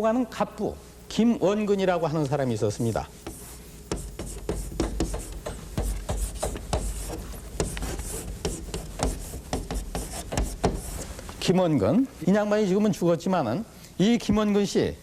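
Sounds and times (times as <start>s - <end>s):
writing taps and scratches on board: 3.2s - 11.1s.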